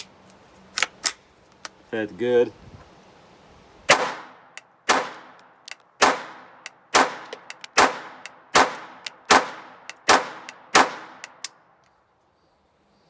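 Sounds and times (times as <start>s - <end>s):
pistol shots: 3.9s - 5.4s, 6.0s - 11.5s.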